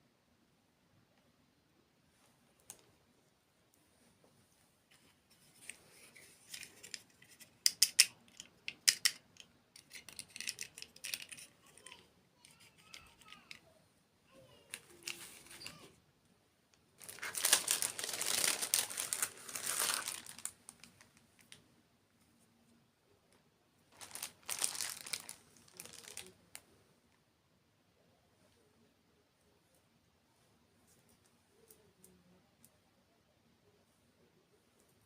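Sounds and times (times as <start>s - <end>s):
packaging crinkling and tearing: 17.0s - 21.5s, 24.0s - 26.4s.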